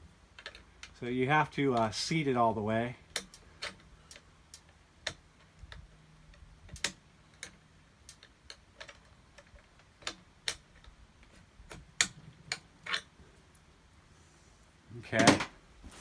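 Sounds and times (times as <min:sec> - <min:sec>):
metal clicks and taps: 0:03.1 - 0:13.1.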